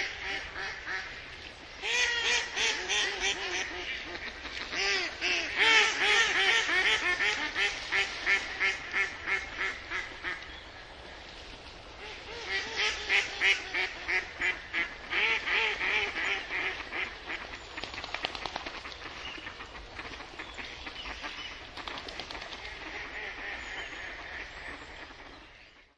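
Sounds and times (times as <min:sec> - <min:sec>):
duck quacking: 0:00.0 - 0:01.2, 0:01.8 - 0:10.4, 0:12.0 - 0:17.5.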